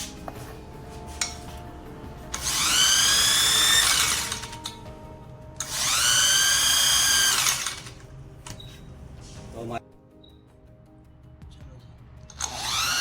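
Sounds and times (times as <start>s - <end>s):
electric drill whining: 2.3s - 5.0s, 5.6s - 8.0s, 12.3s - 13.0s.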